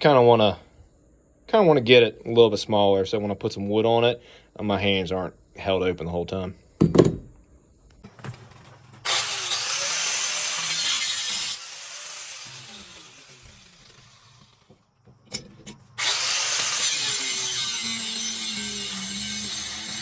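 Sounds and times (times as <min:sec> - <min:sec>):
power grinder grinding steel: 0:08.1 - 0:14.7, 0:15.3 - 0:20.0.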